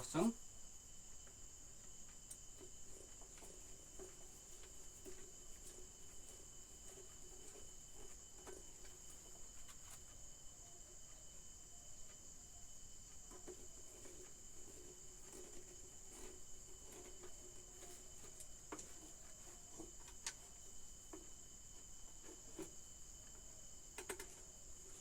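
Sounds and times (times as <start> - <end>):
crickets chirring: 0.0 - 25.0
faint clicks and taps: 22.2 - 24.4.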